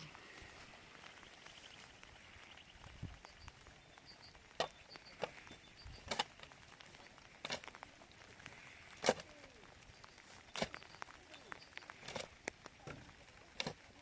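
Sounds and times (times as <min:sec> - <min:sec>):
faint high chirps: 0:01.0 - 0:06.1, 0:09.2 - 0:12.2.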